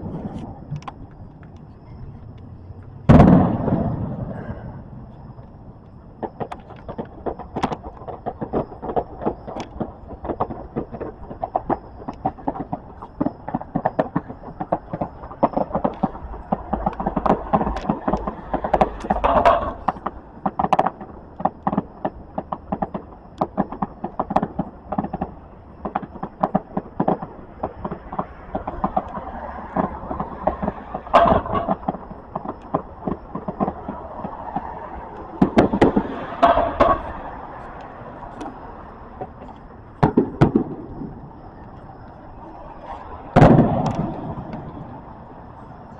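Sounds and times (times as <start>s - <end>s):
background hum: 0.0s - 45.9s
fireworks popping and crackling: 0.0s - 45.9s
fireworks loud bangs: 3.0s - 45.9s.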